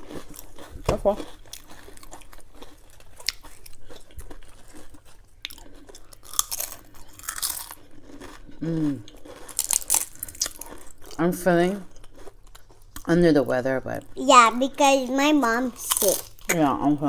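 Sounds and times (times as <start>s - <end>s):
snack food crunching: 0.0s - 13.2s, 14.0s - 16.8s
person humming mm: 8.6s - 9.1s.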